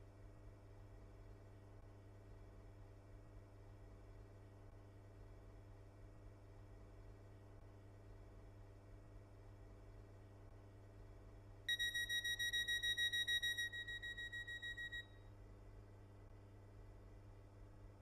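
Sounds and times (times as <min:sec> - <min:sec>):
steady low hum: 0:00.0 - 0:18.0
rapid high door warning beeps: 0:11.7 - 0:15.1.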